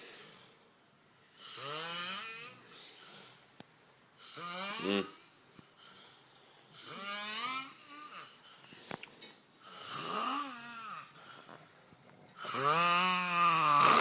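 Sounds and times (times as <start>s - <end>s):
man snoring: 4.2s - 5.4s, 9.6s - 11.1s, 12.4s - 14.0s.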